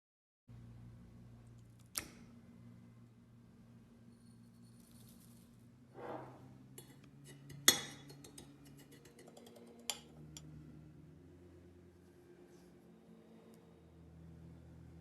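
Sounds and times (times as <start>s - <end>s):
soft brush of movement: 6.0s - 6.5s.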